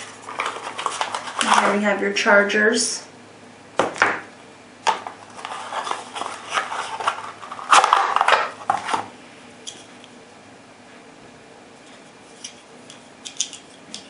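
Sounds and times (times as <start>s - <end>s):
packaging rustling: 0.0s - 1.8s, 4.9s - 9.1s.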